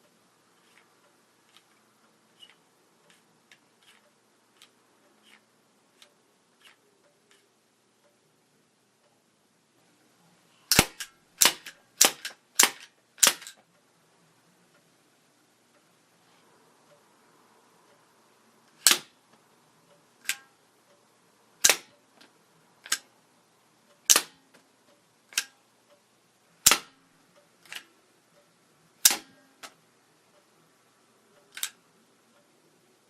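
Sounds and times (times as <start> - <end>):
rubber band gun snapping: 10.7 - 13.6, 18.8 - 19.2, 21.6 - 21.9, 24.1 - 24.4, 26.6 - 27.0, 29.0 - 29.4.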